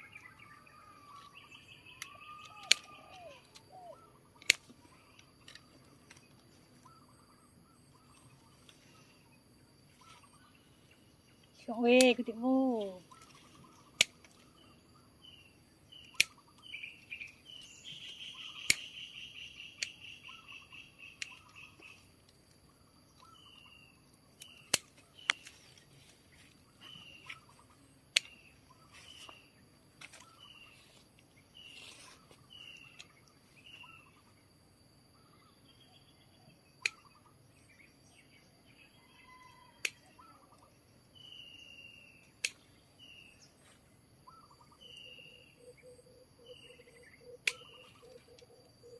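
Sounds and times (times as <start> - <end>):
insect drone: 0.0 - 48.9
sharp clicks: 2.0 - 6.3, 13.9 - 14.4, 16.0 - 17.4, 18.1 - 20.1, 24.4 - 25.9, 27.0 - 28.6, 36.8 - 37.1, 42.3 - 42.7, 47.4 - 48.1.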